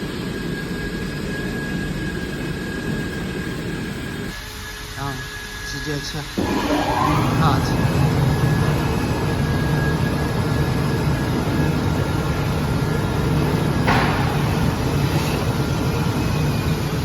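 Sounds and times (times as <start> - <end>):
cutting machine hum: 5.0 - 17.0.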